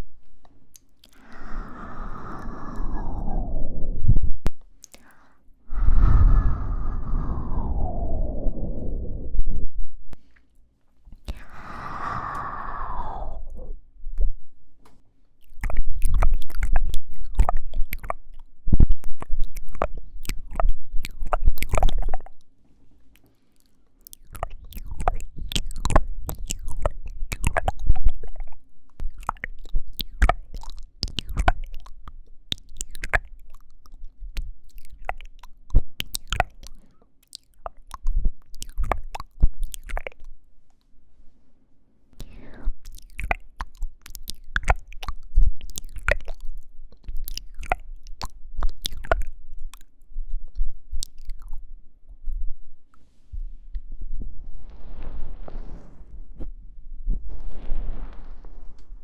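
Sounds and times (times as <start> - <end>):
wet mouth clicks and smacks: 0.0 - 3.4, 4.4 - 6.0, 11.1 - 14.4, 15.3 - 40.9, 42.2 - 52.5.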